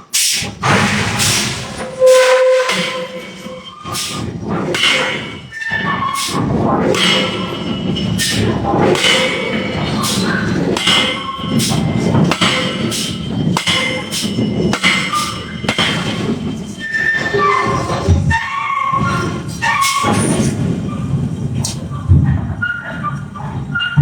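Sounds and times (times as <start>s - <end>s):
heavy hammer blows on iron: 0.2s - 5.5s, 6.2s - 16.8s.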